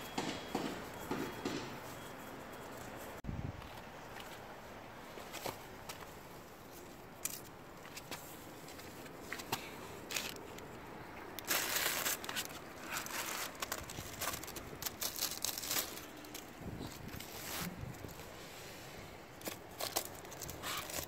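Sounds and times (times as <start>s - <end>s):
leaves rustling and stems snapping: 5.1s - 18.4s, 19.3s - 21.0s.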